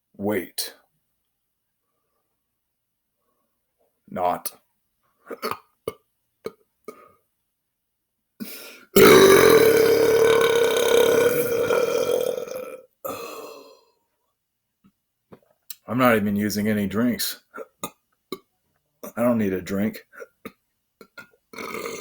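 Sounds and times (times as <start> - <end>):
man belching: 5.3 - 6.0, 9.0 - 13.8, 20.2 - 22.0.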